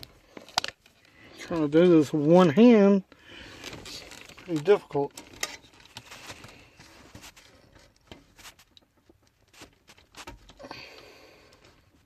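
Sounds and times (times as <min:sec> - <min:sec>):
plastic connectors clicking: 0:00.4 - 0:00.9
plastic rustling: 0:03.3 - 0:10.7.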